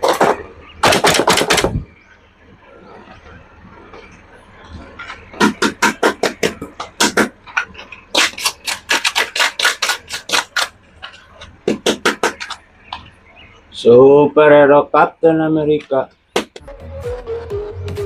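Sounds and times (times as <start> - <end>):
rapid sharp clicks: 0.8 - 1.8, 5.1 - 13.0.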